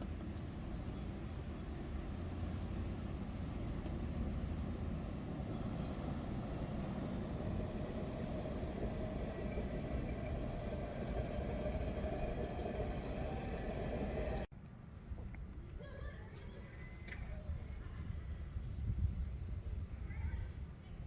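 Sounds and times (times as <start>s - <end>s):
steady vehicle rumble: 0.0s - 14.5s.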